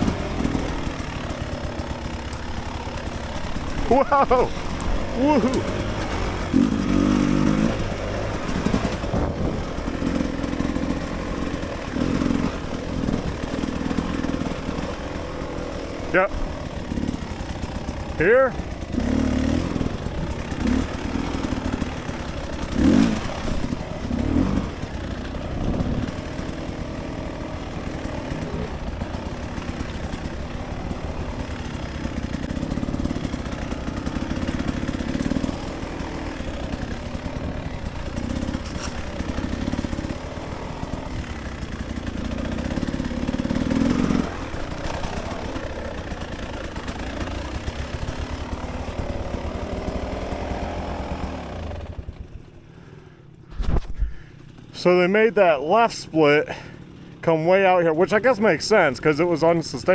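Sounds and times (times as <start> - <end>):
dirt bike engine revving: 0.0 - 59.9
bike clatter: 20.2 - 49.1.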